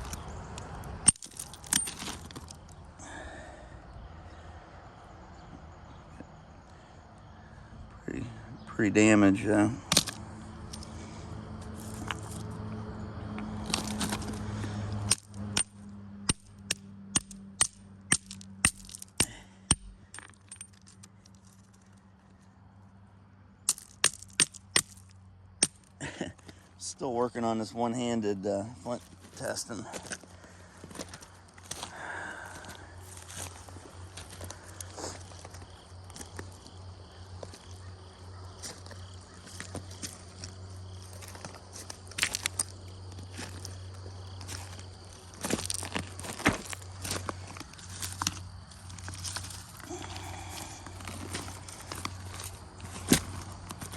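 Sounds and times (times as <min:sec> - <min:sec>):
footsteps crunching on gravel: 0:00.0 - 0:02.8, 0:09.9 - 0:15.0, 0:28.7 - 0:53.9
insect chirping: 0:00.0 - 0:53.9
rocks striking with ringing clinks: 0:01.0 - 0:02.6, 0:09.9 - 0:10.8, 0:15.0 - 0:21.4, 0:23.6 - 0:26.0
stone clicks: 0:15.0 - 0:21.5, 0:23.7 - 0:25.9.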